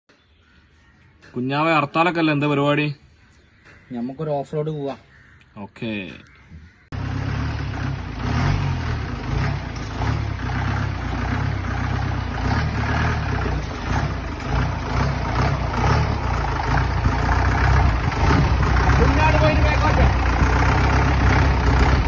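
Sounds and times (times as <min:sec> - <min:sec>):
vehicle engine running: 0:06.9 - 0:22.0.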